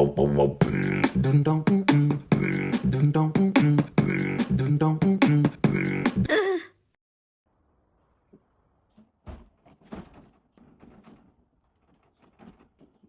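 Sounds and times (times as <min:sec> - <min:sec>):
faint knocks and rustling: 0:08.3 - 0:13.0.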